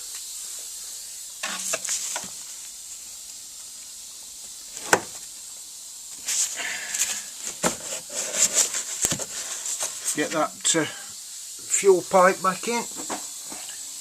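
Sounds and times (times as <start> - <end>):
background hiss: 0.0 - 14.0
clattering and rustling: 6.1 - 10.2.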